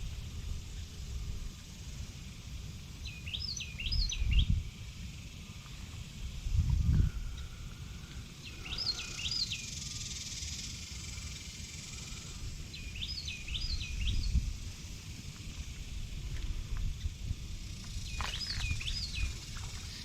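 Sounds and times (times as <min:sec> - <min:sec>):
outdoor ambience: 0:00.0 - 0:20.0
songbird singing: 0:00.0 - 0:20.0.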